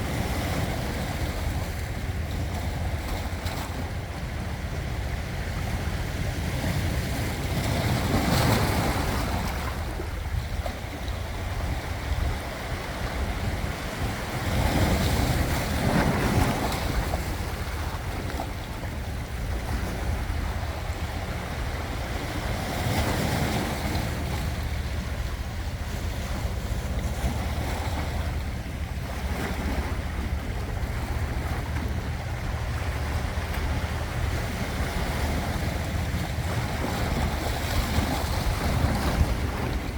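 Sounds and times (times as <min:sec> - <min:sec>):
ocean waves breaking: 0:00.0 - 0:39.9
steady low rumble: 0:16.8 - 0:39.9.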